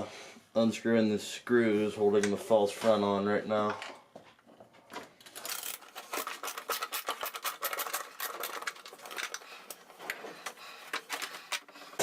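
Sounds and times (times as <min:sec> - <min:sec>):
screwdriver clicking and scraping: 0:05.2 - 0:12.0.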